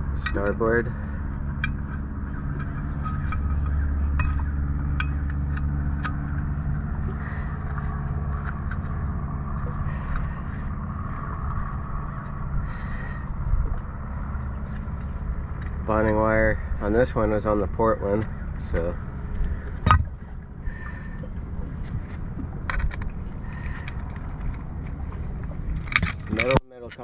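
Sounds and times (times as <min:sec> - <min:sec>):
low motor hum: 0:00.0 - 0:27.0.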